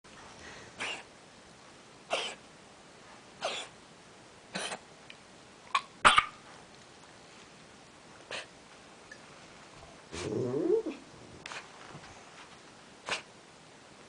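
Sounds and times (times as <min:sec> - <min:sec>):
dog coughing: 0:00.8 - 0:01.1, 0:02.1 - 0:02.4, 0:03.4 - 0:03.8, 0:04.5 - 0:04.8, 0:05.8 - 0:06.4.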